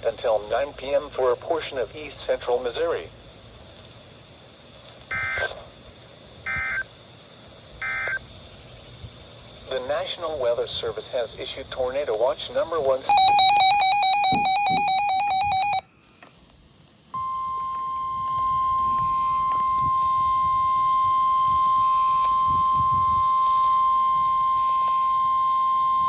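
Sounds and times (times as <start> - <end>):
steady single-pitch alarm tone: 5.1 - 5.5, 6.5 - 6.9, 7.8 - 8.2, 13.1 - 15.9, 17.2 - 26.0
warbling electronic data screech: 13.1 - 15.8.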